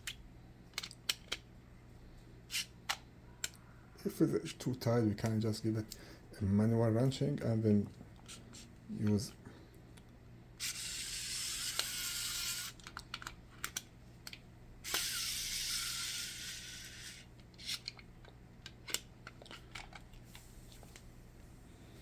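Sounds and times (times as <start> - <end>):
electric screwdriver whirring: 10.6 - 12.8, 14.9 - 17.3.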